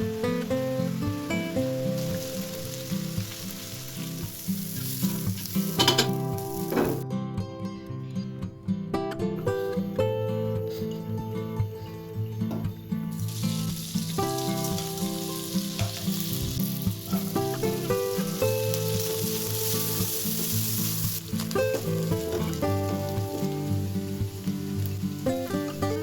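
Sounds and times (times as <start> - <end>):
food sizzling in hot oil: 0.0 - 7.0, 12.9 - 26.0
guitar background music: 0.0 - 26.0.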